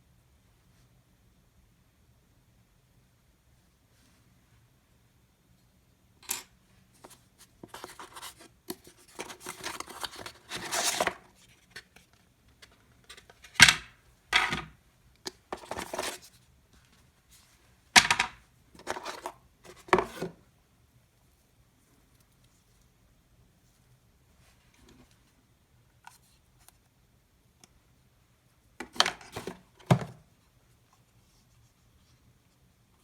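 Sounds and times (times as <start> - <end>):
cardboard and plastic rustling: 7.0 - 14.7, 15.4 - 20.4, 28.8 - 30.3.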